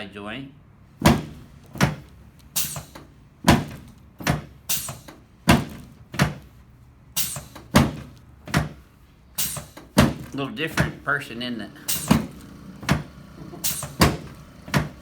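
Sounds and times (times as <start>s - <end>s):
knocks and thuds of adjusting table: 1.0s - 2.1s, 2.7s - 6.6s, 7.4s - 8.8s, 9.5s - 11.1s, 12.0s - 13.2s, 13.8s - 15.0s.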